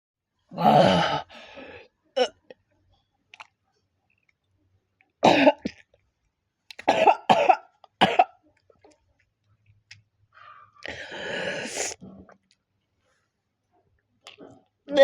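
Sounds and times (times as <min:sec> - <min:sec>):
rasping throat sound: 0:00.6 - 0:01.6
person coughing: 0:05.2 - 0:05.6, 0:06.9 - 0:08.4.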